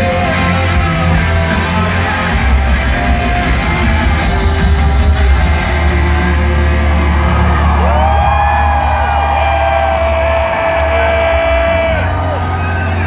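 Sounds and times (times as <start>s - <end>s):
live rock band playing: 0.0s - 8.0s.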